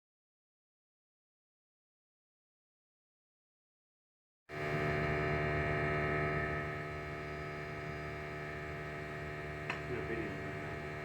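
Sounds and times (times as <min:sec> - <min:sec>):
steady electrical hum: 0:04.5 - 0:11.0.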